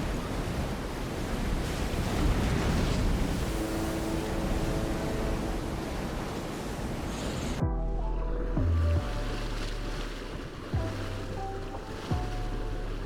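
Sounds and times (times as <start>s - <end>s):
wind buffeting microphone: 0.0s - 7.7s
storm waves crashing: 0.0s - 7.8s.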